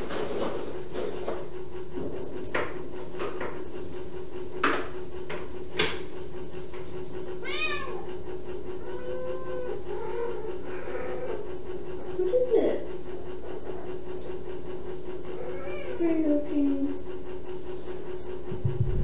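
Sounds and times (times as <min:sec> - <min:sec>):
steady hum: 0:00.0 - 0:19.0
kitten meowing: 0:07.4 - 0:08.0.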